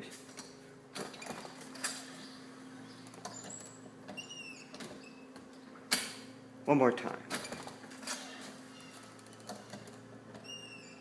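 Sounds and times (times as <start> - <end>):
steady low hum: 0.0 - 11.0
high door squeak: 1.0 - 5.4, 7.4 - 11.0.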